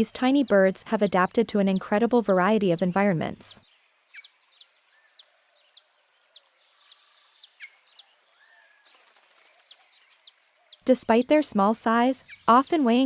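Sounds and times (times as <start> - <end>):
down-slurred bird notes: 0.0 - 3.6
birds chipping: 0.0 - 13.0.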